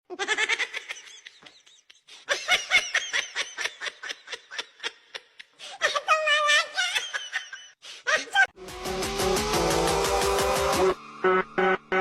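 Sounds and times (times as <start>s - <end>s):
person laughing: 0.1s - 8.6s.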